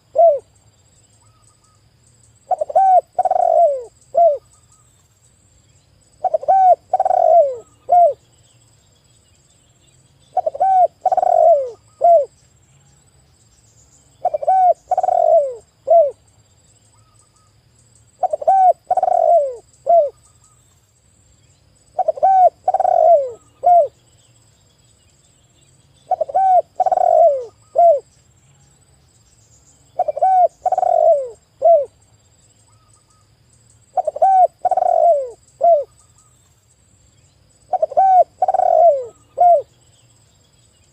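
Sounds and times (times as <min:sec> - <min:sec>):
dove cooing: 0:00.0 - 0:00.5, 0:02.5 - 0:04.4, 0:06.2 - 0:08.2, 0:10.3 - 0:12.3, 0:14.2 - 0:16.2, 0:18.2 - 0:20.2, 0:22.0 - 0:24.0, 0:26.1 - 0:28.1, 0:30.0 - 0:32.0, 0:34.0 - 0:35.9, 0:37.7 - 0:39.7.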